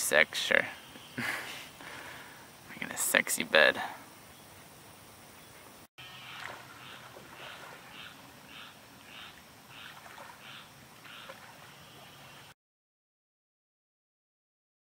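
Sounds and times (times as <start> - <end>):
faint background hiss: 0.0 - 12.5
animal calling: 6.0 - 12.5.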